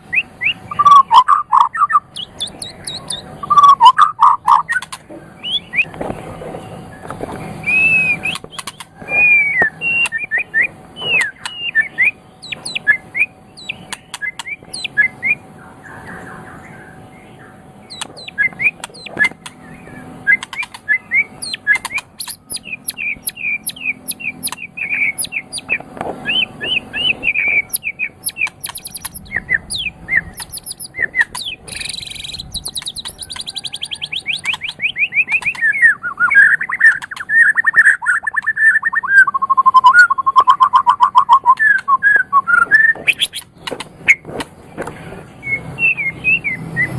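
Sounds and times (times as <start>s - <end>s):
songbird singing: 0.0s - 46.9s
sharp clicks: 2.1s - 3.7s, 4.5s - 5.2s, 8.2s - 11.6s, 13.6s - 14.9s, 17.9s - 19.6s, 20.3s - 26.0s, 26.6s - 35.8s.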